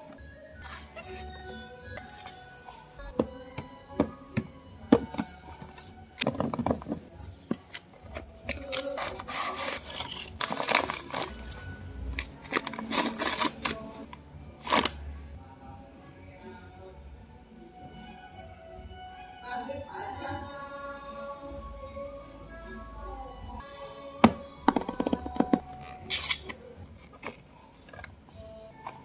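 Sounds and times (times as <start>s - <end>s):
background music: 0.0s - 29.0s
packaging rustling and scraping: 0.1s - 2.5s, 5.0s - 15.0s, 25.2s - 28.2s.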